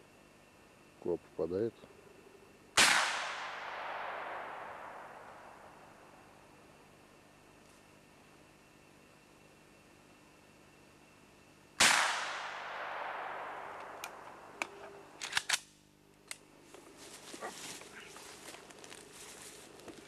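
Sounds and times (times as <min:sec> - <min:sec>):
gunshot echoing: 0:02.8 - 0:05.5, 0:11.8 - 0:14.2
handling noises: 0:16.3 - 0:20.0.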